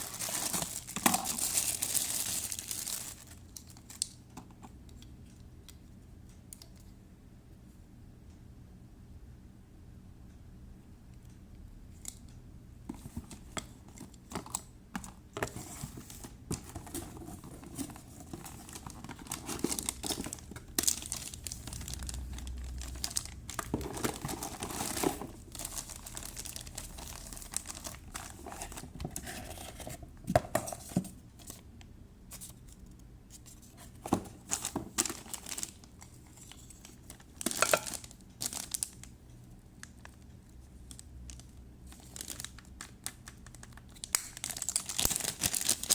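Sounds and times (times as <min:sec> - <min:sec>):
packaging crinkling and rustling: 0:00.0 - 0:04.2, 0:12.9 - 0:31.6, 0:32.3 - 0:39.1, 0:39.8 - 0:45.9.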